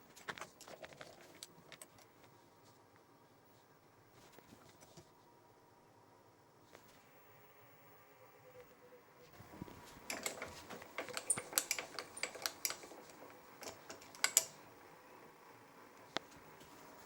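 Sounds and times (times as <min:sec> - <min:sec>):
metal tools clicking and rattling: 0:10.1 - 0:14.6.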